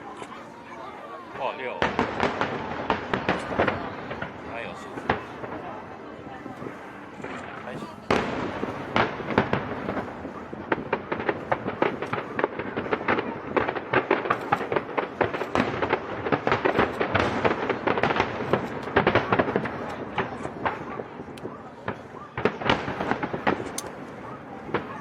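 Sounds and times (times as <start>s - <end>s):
fireworks cracks and bangs: 1.3s - 25.0s.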